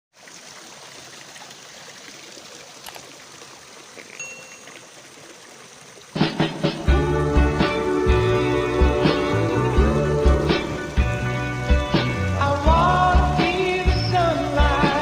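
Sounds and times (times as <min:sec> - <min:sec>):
stream water running: 0:00.1 - 0:15.0
loud music: 0:06.4 - 0:15.0.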